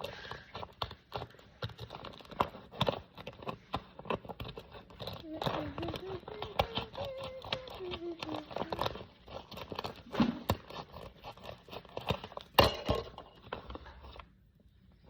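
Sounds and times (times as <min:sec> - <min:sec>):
packaging clicking and crinkling: 0:00.0 - 0:14.3
person humming softly: 0:05.0 - 0:09.2.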